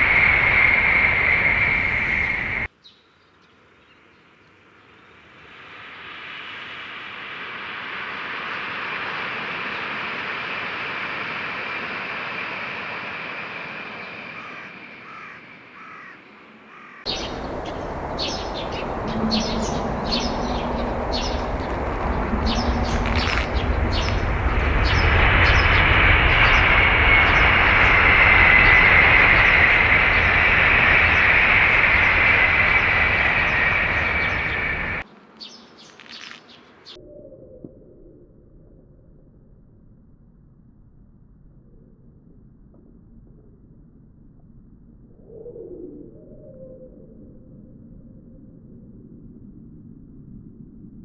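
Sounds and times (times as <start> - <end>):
birds chirping: 0.0 - 2.7, 16.7 - 36.9
train rushing past: 0.0 - 2.7, 17.1 - 35.0.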